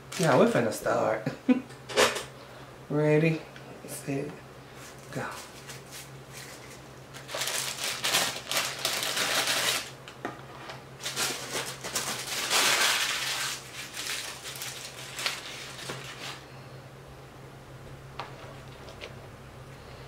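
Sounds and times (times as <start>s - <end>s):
food wrapper crinkling: 5.6s - 10.0s, 11.0s - 16.4s.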